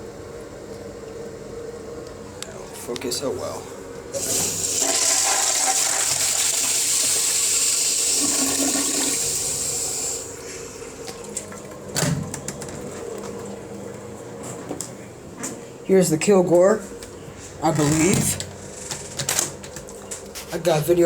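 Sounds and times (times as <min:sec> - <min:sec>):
toilet flushing water rushing: 0:04.1 - 0:13.2.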